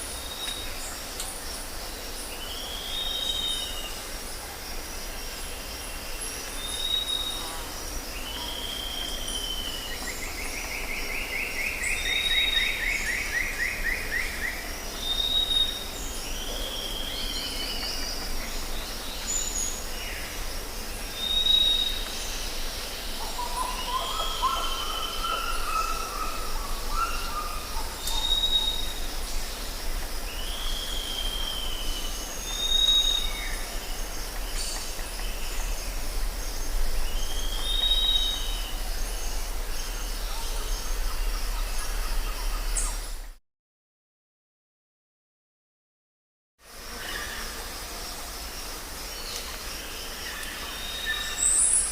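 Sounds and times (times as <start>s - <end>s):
insect drone: 0.0s - 43.4s, 46.6s - 51.9s.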